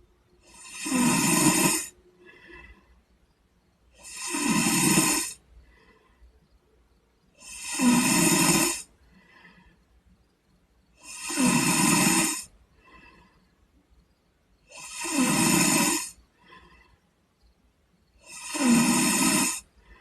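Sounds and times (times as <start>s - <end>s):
boy snoring: 0.4s - 2.8s, 3.9s - 5.4s, 7.4s - 8.9s, 11.0s - 13.2s, 14.6s - 16.6s, 18.2s - 19.7s
faint breath: 1.8s - 4.0s, 5.2s - 7.6s, 8.7s - 11.0s, 12.4s - 14.8s, 16.1s - 18.3s, 19.6s - 20.0s.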